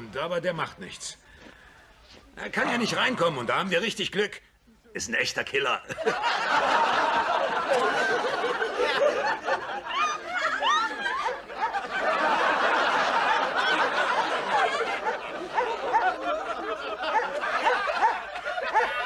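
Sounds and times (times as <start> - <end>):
studio audience laughing: 5.9 - 19.0.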